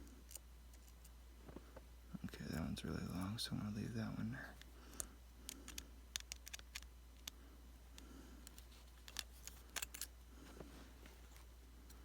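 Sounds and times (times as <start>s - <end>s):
faint low hum: 0.0s - 12.0s
small screwdriver and screws clicking: 5.0s - 7.4s.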